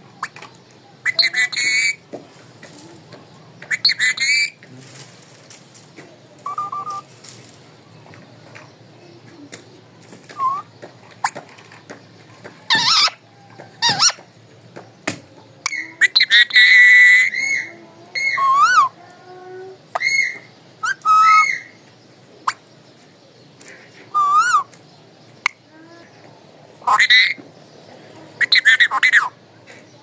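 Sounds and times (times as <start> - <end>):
parakeet squawks and whistles: 6.5 - 7.0, 10.4 - 10.7, 12.7 - 13.2, 20.0 - 21.7.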